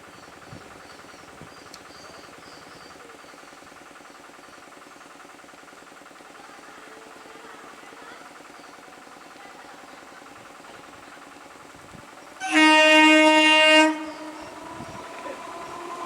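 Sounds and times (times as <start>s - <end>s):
engine idling: 0.0s - 16.0s
faint high chirps: 13.8s - 16.0s.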